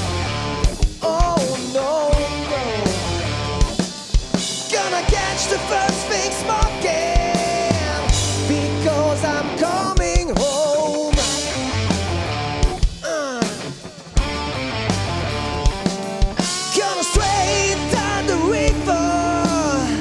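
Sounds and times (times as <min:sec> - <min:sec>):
bass: 0:00.0 - 0:13.0, 0:14.1 - 0:20.0
driving drum kit: 0:00.0 - 0:20.0
lead guitar bent notes: 0:11.2 - 0:12.9, 0:13.9 - 0:20.0.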